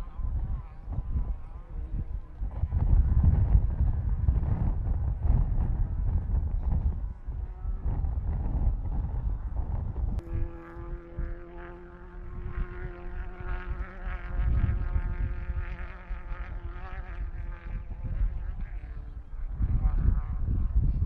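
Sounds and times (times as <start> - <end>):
distant engine buzzing drone: 0.0 - 21.0
low rumble: 0.0 - 21.0.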